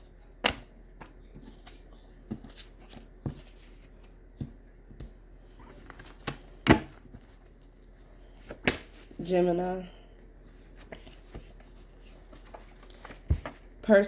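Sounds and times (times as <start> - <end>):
cards being shuffled: 8.4 - 9.1.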